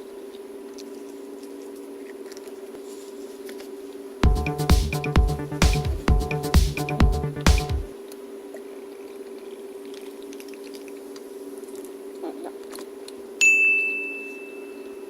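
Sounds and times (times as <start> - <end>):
bright ding: 13.4 - 15.0.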